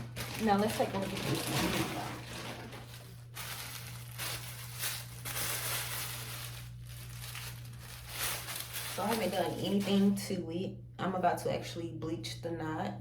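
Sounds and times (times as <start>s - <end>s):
packaging crinkling and rustling: 0.0s - 10.2s
low electrical hum: 0.0s - 13.0s.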